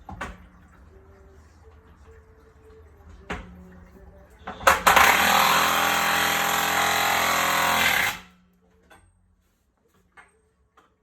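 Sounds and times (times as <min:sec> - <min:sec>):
impact wrench hammering: 0:04.7 - 0:08.3.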